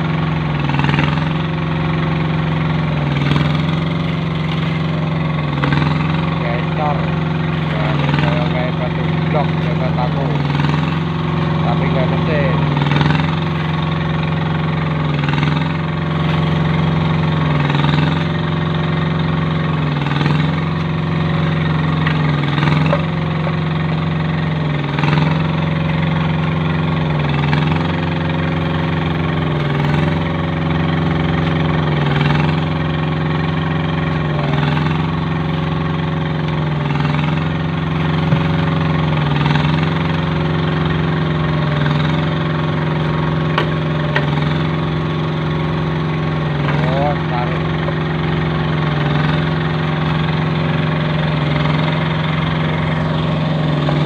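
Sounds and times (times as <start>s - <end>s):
machine engine running: 0.0s - 54.0s.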